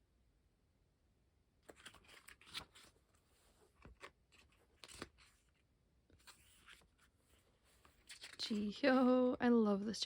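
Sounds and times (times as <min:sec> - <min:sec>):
paper pages rustling: 0:01.6 - 0:09.1.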